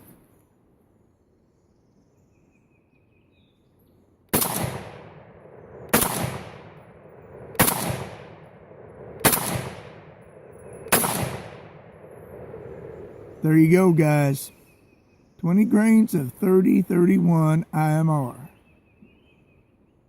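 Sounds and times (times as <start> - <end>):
rifle shots with echo: 4.3 - 12.6.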